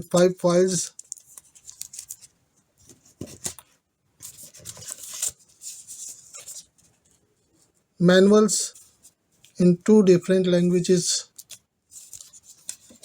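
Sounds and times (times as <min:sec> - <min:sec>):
packaging rustling: 0:00.8 - 0:02.3, 0:02.9 - 0:07.0, 0:11.3 - 0:13.0.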